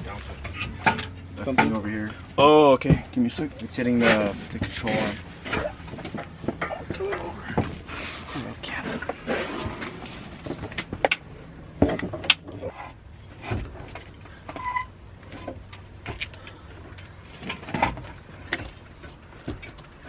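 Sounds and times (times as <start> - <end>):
metal knocks and clanks: 0.0 - 2.2.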